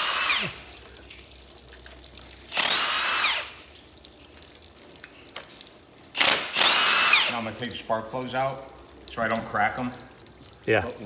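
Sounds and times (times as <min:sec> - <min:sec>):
power tool motor whine: 0:00.0 - 0:00.6, 0:02.5 - 0:03.5, 0:06.2 - 0:07.3.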